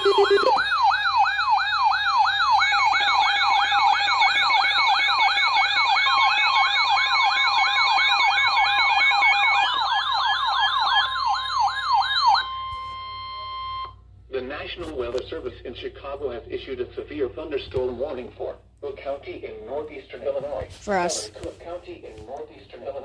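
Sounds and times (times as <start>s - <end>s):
electronic siren wails: 0.0s - 14.0s
steady alarm tone: 0.0s - 14.1s.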